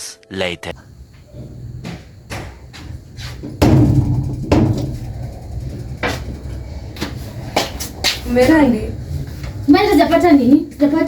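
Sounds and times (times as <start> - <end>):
door thumping shut: 1.3 - 5.2
sharp knock: 3.6 - 5.0.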